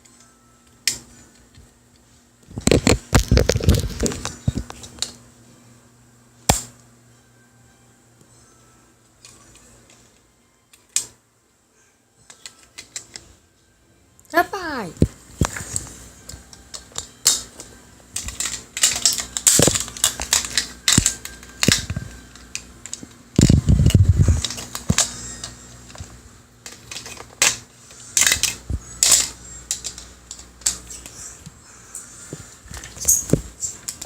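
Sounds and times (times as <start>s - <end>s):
low buzzing rubbing sound: 23.4s - 26.5s.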